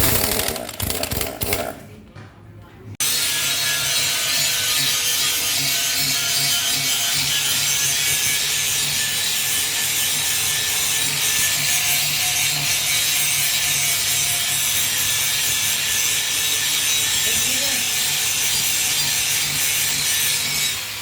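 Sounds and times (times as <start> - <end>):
gritty transmission growl: 0.0 - 1.9.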